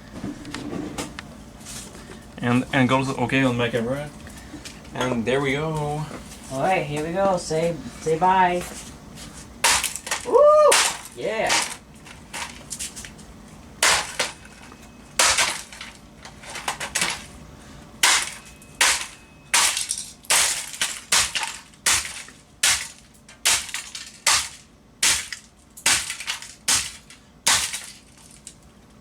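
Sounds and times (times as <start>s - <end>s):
camcorder being smashed: 9.6s - 11.8s, 13.8s - 14.5s, 15.2s - 16.0s, 18.0s - 28.5s.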